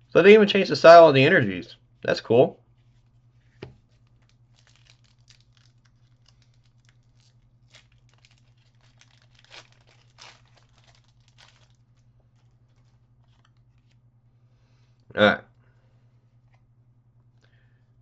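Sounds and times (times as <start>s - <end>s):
foil wrapper crinkling and tearing: 3.8s - 14.0s.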